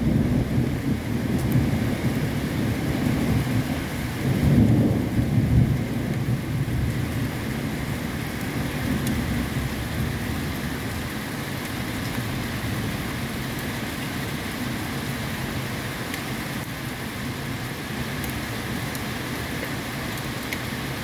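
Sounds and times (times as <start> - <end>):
low thunder rumble: 0.0 - 16.0
steady rain falling: 0.0 - 21.0.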